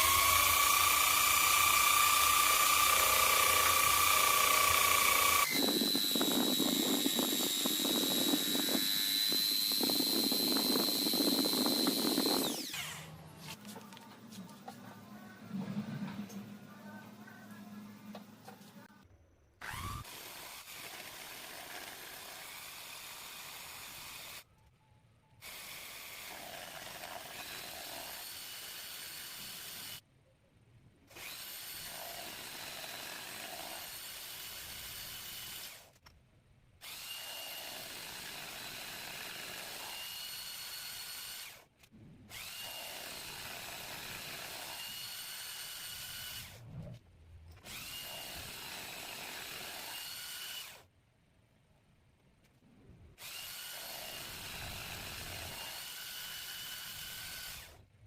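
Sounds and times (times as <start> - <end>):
machine tool whining: 0.0 - 13.4.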